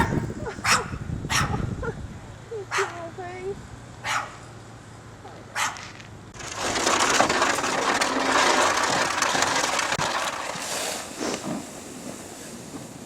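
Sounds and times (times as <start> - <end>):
crunching scrape through snow: 6.4 - 12.7.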